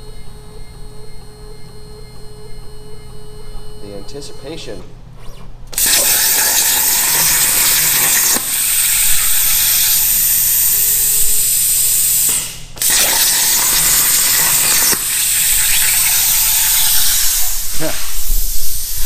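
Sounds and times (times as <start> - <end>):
plasma torch hissing: 5.8 - 19.0.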